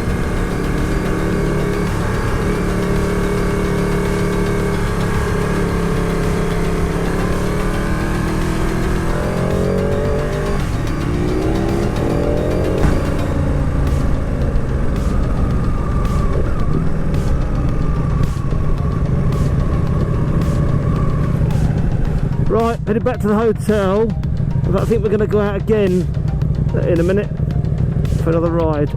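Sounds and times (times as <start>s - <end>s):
motorcycle engine revving: 0.0s - 28.9s
wind and road noise: 0.0s - 28.9s.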